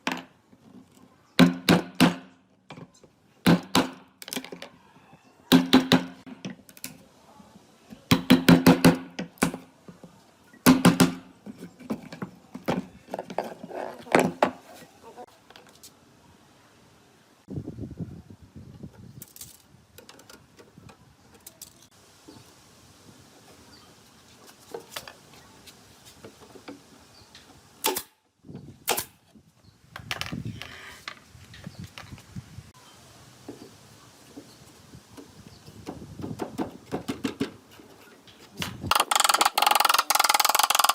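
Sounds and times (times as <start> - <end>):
hammer striking wood: 1.4 - 2.4, 3.5 - 4.0, 5.5 - 6.4, 8.1 - 9.6, 10.6 - 11.3
wood and tools knocking: 8.1 - 14.6, 35.2 - 37.6.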